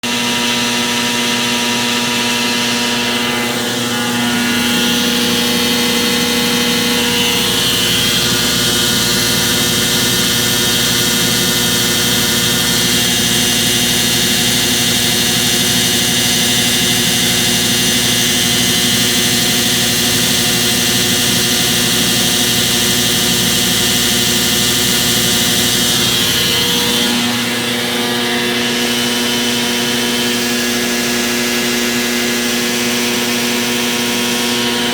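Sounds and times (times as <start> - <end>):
washing machine spinning: 0.1 - 28.0
steady tone: 2.8 - 14.9.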